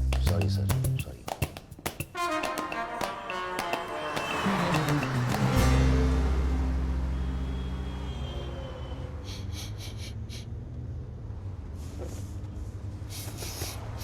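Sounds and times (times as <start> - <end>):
held hum: 3.8 - 10.6
quick high ticks: 13.1 - 14.0.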